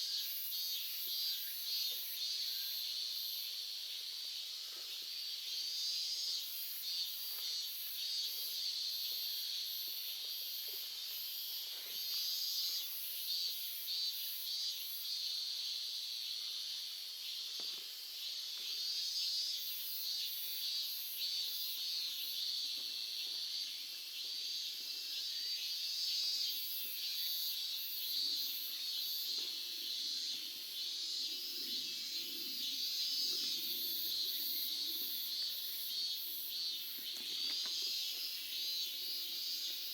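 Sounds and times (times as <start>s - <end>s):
insects trilling: 5.6s - 39.9s
high rhythmic insect pulses: 17.3s - 39.9s.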